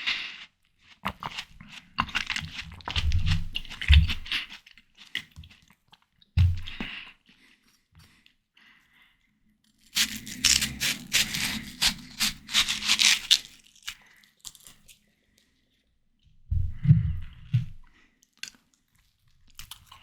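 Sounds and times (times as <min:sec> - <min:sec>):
crunchy watermelon bite: 0:00.0 - 0:05.7, 0:09.8 - 0:14.9
wet crunching and chewing: 0:00.0 - 0:07.5, 0:09.7 - 0:15.6, 0:18.2 - 0:20.0.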